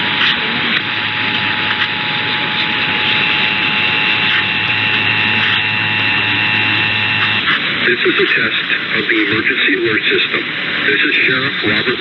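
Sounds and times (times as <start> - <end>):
radio static hiss: 0.0 - 12.0
two-tone attention signal: 0.8 - 7.5.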